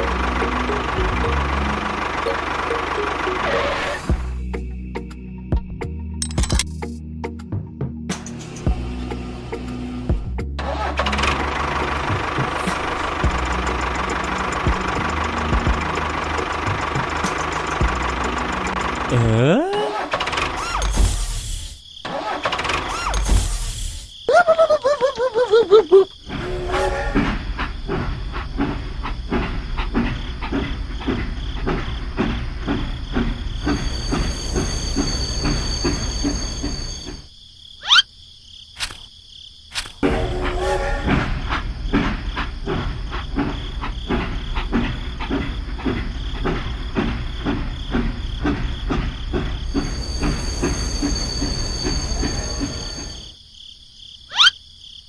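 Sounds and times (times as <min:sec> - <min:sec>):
small tractor engine chugging: 0:00.0 - 0:04.1, 0:10.7 - 0:19.5, 0:27.6 - 0:37.1, 0:41.6 - 0:53.3.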